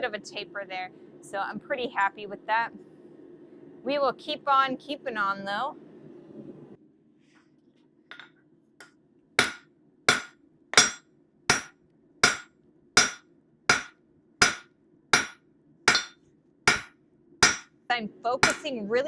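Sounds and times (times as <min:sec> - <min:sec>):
hammer striking metal on anvil: 0:09.4 - 0:17.7, 0:18.4 - 0:18.7.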